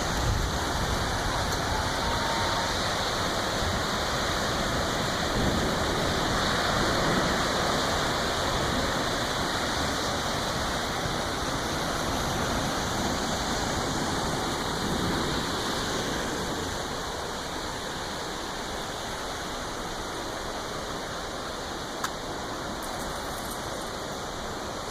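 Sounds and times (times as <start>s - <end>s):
stream rushing: 0.0s - 24.9s.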